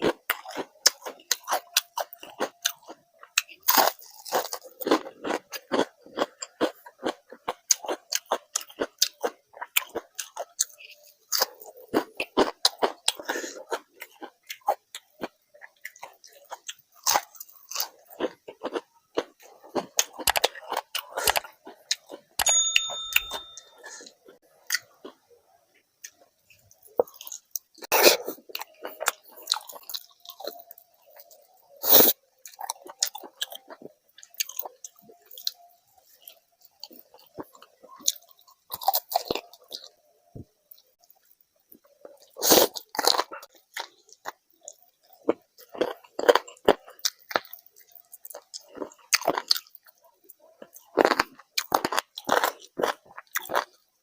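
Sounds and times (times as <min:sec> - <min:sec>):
food crunching: 0:00.0 - 0:23.8, 0:24.5 - 0:54.0
chewing and mouth smacks: 0:41.8 - 0:53.8.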